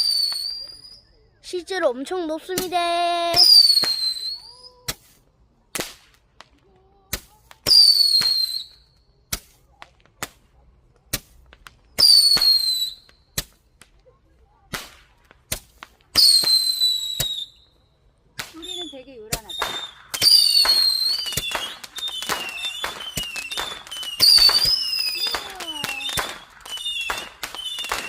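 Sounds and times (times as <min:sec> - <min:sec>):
firework shrill whistle: 0:00.0 - 0:01.3, 0:03.3 - 0:05.2, 0:07.7 - 0:09.5, 0:12.0 - 0:13.4, 0:16.2 - 0:17.9, 0:18.5 - 0:28.0
fireworks cracks and bangs: 0:02.1 - 0:17.6, 0:18.3 - 0:28.0.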